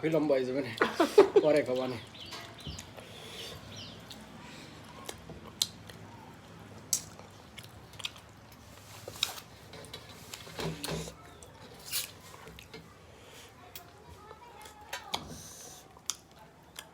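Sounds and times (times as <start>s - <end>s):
person chewing food: 2.1s - 9.4s, 15.8s - 16.9s.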